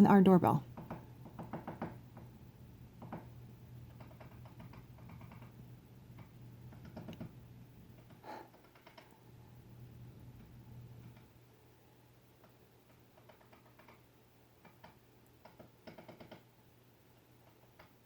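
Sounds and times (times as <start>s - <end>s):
low steady hum: 0.0s - 1.3s, 2.0s - 13.2s.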